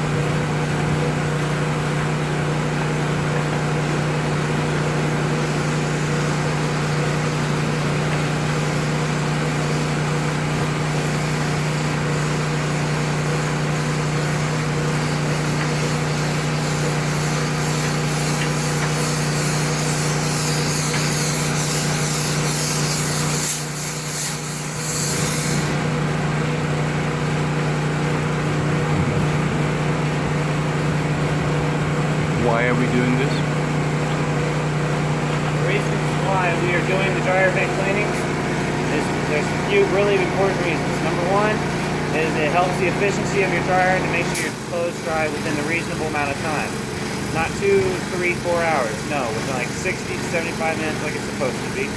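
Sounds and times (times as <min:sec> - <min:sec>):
motor hum: 0:00.0 - 0:51.9
rushing hiss of air: 0:11.0 - 0:25.8.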